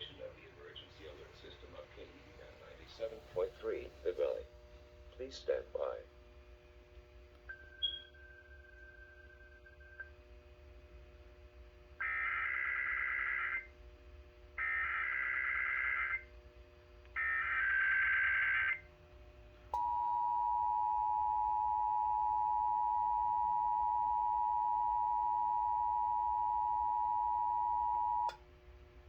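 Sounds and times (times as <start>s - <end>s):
warbling data tone bursts: 17.2s - 18.8s.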